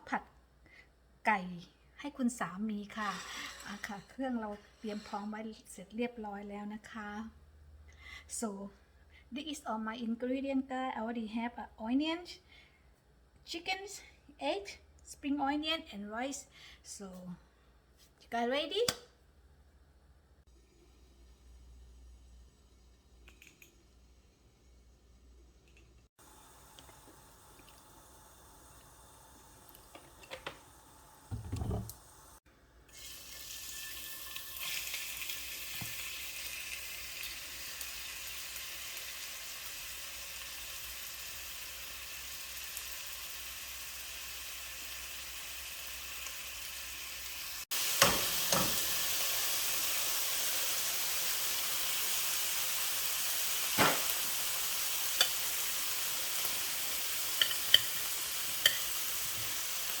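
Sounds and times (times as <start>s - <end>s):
food sizzling in hot oil: 26.2s - 60.0s.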